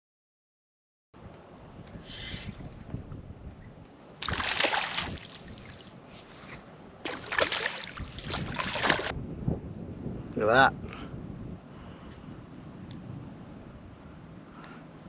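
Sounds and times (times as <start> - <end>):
water splashing: 4.2 - 6.0, 7.0 - 9.1.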